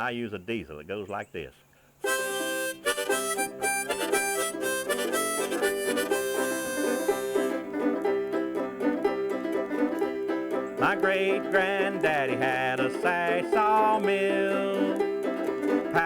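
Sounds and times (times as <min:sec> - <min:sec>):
banjo picking: 0:02.0 - 0:16.0
long held chords: 0:02.0 - 0:16.0.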